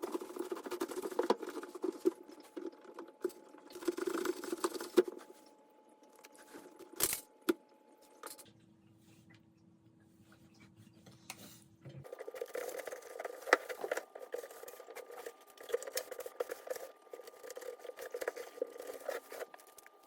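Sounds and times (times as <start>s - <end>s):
scrub brush scrubbing rubber: 12.0s - 20.0s.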